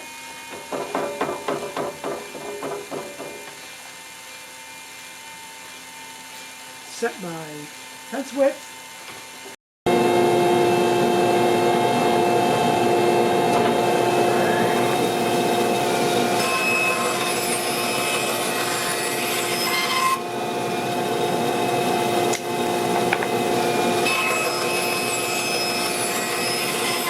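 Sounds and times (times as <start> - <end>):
motor hum: 9.9 - 16.4
band saw blade cutting wood: 13.0 - 27.0.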